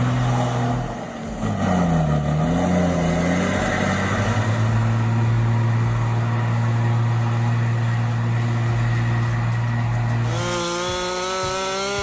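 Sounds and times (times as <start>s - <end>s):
heavy truck engine droning: 0.0s - 12.0s
chainsaw whine: 7.8s - 12.0s.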